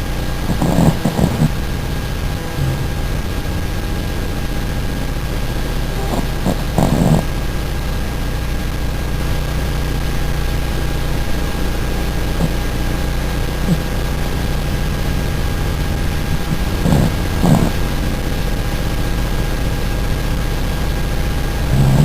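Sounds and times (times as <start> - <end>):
steady low hum: 0.0 - 22.0
dog snoring: 0.4 - 3.8, 5.3 - 7.4, 12.3 - 12.6, 13.6 - 14.0, 15.9 - 18.0, 21.4 - 22.0.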